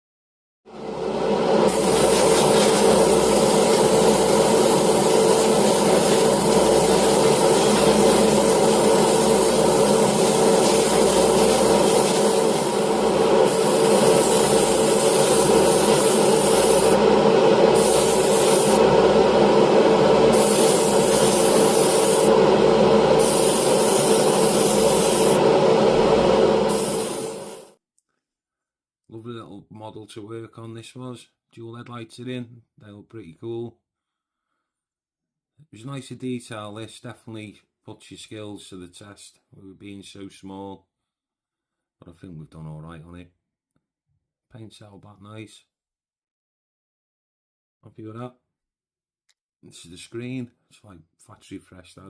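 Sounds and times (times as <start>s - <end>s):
hiss: 1.5s - 27.7s
small motor running: 1.7s - 19.0s, 20.2s - 22.4s, 23.1s - 27.7s.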